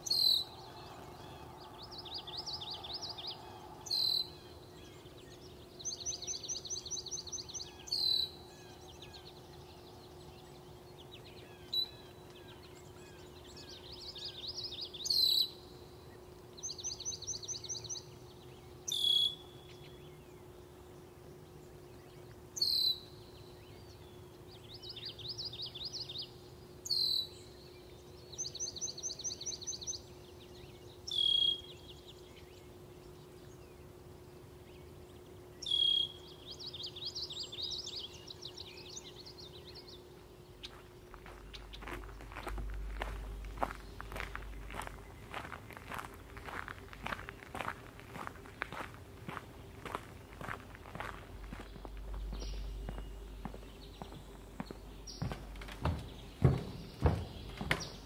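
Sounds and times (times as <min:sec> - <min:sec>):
bird trill: 0:00.0 - 0:09.3, 0:18.9 - 0:20.0, 0:31.0 - 0:31.9, 0:35.6 - 0:39.8.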